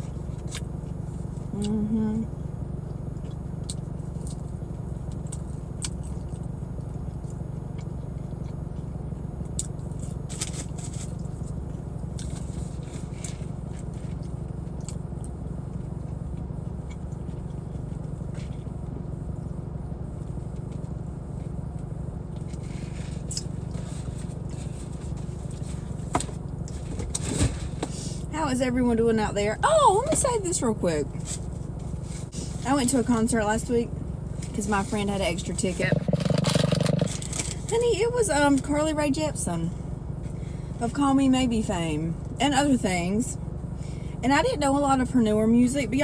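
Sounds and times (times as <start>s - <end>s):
car engine rumble: 0.0s - 46.0s
eating and chewing food: 2.9s - 28.2s, 34.0s - 37.9s.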